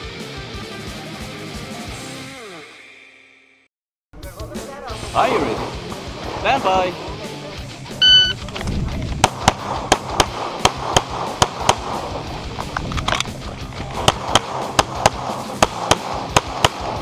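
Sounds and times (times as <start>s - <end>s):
pistol shots: 9.2s - 12.2s, 14.0s - 17.0s.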